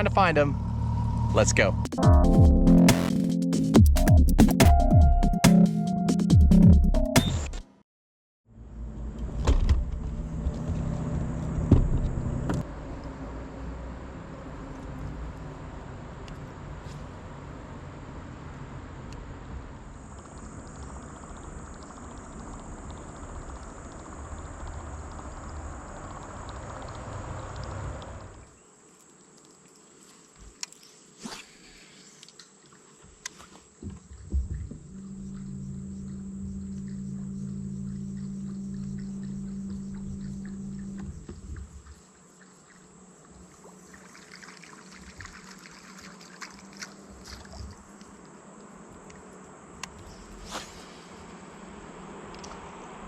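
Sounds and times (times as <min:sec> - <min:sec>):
water lapping and trickling: 0:19.5 - 0:48.6
high insect buzz: 0:19.8 - 0:53.0
small water splashes: 0:43.4 - 0:47.9.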